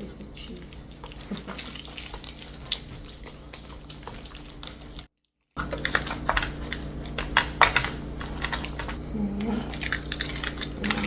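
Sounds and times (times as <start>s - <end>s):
kitchen clicks and taps: 5.6s - 9.0s
steady low hum: 5.6s - 11.0s.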